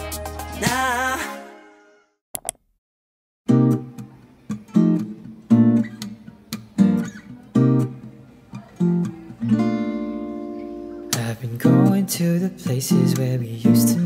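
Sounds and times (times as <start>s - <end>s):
acoustic guitar strumming chords: 3.5s - 14.0s.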